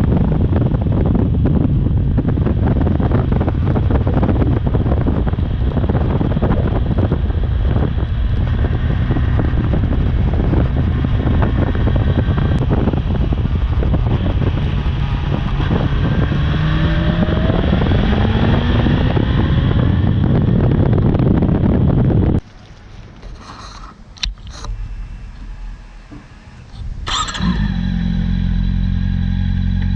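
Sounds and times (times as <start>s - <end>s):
motorcycle engine accelerating: 0.0s - 22.4s, 24.5s - 29.9s
wind buffeting microphone: 0.0s - 29.9s.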